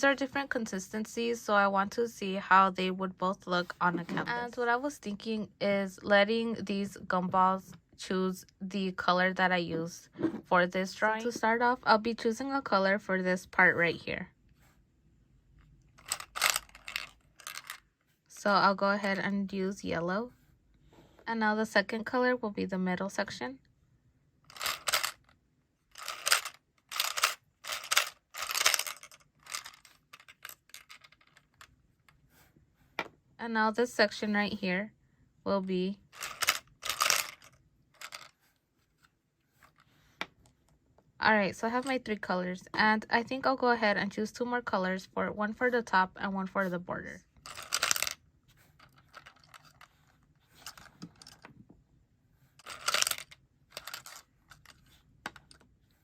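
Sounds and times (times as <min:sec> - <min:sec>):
gumball machine crank grinding: 0:24.5 - 0:25.2, 0:25.9 - 0:31.2, 0:36.2 - 0:38.3, 0:47.4 - 0:48.2, 0:52.6 - 0:54.2.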